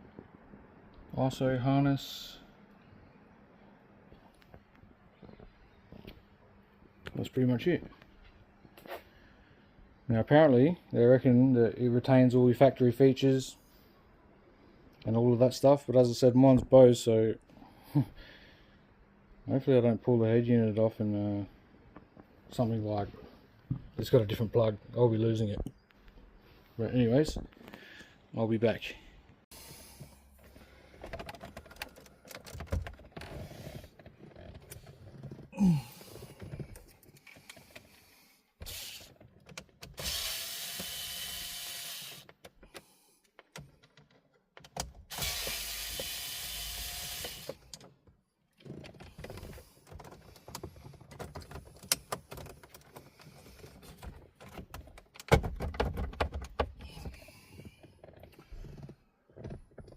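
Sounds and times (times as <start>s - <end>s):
small electric motor running: 40.0s - 42.2s, 45.1s - 47.6s
clicks and knocks on plastic trim: 47.7s - 57.2s.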